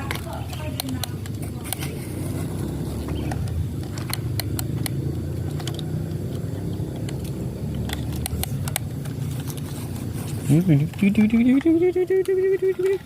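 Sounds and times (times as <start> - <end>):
sharp clicks: 0.0 - 2.0, 3.0 - 9.7.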